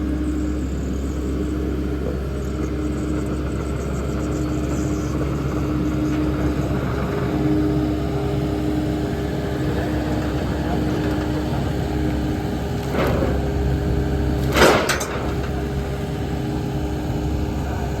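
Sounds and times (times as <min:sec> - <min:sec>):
heavy engine humming: 0:00.0 - 0:18.0
clunk: 0:09.8 - 0:16.8.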